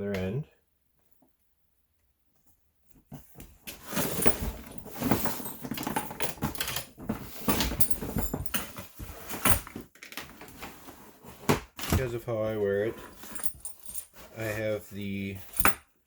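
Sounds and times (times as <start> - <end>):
leather tool belt rustling: 3.6 - 9.8, 12.8 - 14.8, 15.4 - 15.8.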